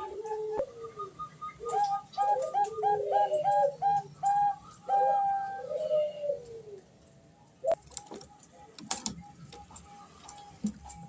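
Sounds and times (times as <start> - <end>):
dove cooing: 0.0 - 6.9, 7.6 - 11.0.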